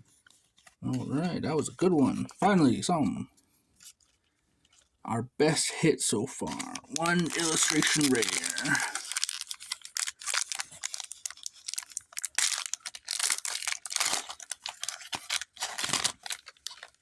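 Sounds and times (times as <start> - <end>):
foil wrapper crinkling and tearing: 6.4 - 17.0.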